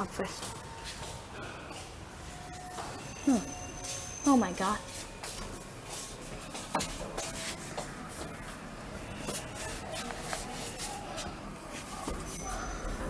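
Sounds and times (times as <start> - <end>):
rubbing and scraping: 9.2 - 13.0.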